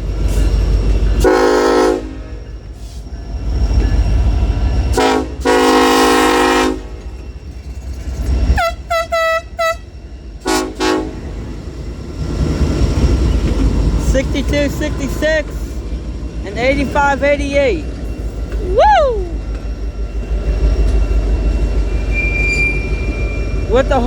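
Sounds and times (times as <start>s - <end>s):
freight train rumble: 0.0s - 24.0s
locomotive air horn: 1.2s - 2.4s, 5.0s - 7.0s, 8.6s - 11.3s.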